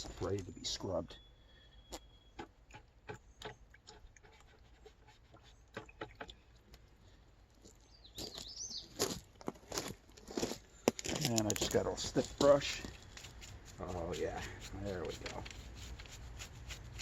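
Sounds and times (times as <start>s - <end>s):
bird chirping: 0.0s - 2.5s, 7.8s - 9.0s.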